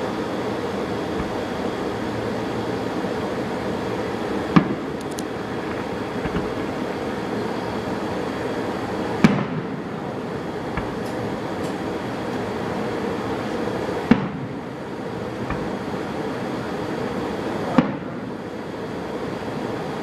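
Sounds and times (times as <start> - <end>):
steady background rumble: 0.0 - 20.0
fireworks bangs: 1.0 - 2.0, 4.4 - 7.4, 9.0 - 12.6, 14.0 - 14.7, 17.7 - 18.3.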